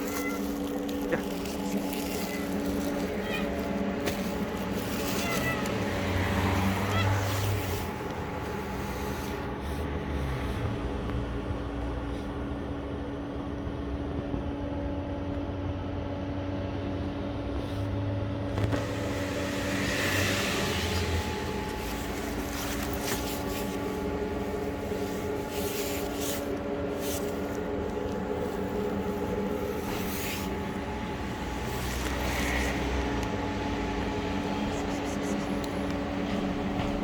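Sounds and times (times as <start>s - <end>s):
street traffic: 0.0s - 37.0s
vehicle engine rumbling: 0.0s - 37.0s.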